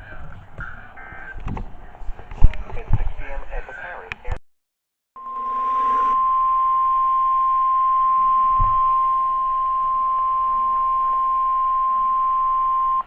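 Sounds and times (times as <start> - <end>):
steady loud alarm beep: 5.2 - 13.0
short low thump: 8.5 - 8.9.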